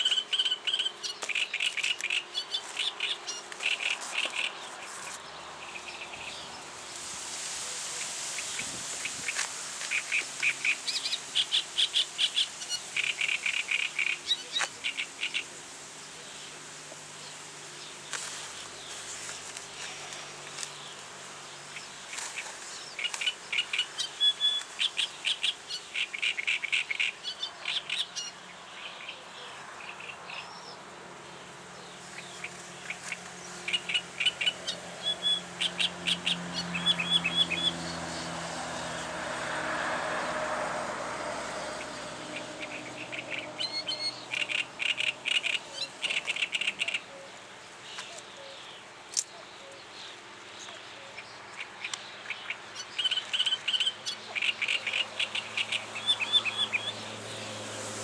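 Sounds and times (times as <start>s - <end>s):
warbler singing chattering notes: 0.0s - 6.6s, 8.4s - 15.6s, 31.8s - 38.3s, 41.8s - 47.1s, 48.0s - 57.5s.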